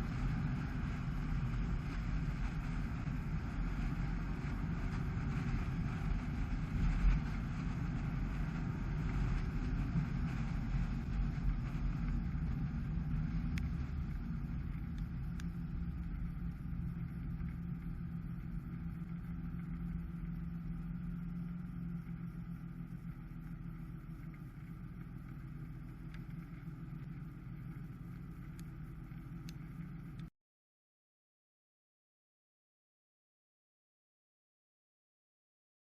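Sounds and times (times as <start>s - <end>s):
engine and road noise rumble: 0.0s - 30.3s
faint clicks: 13.5s - 30.3s.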